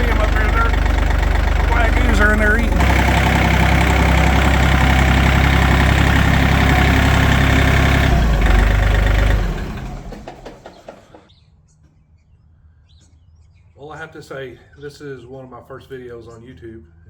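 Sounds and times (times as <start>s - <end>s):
atv engine idling: 0.0s - 11.2s.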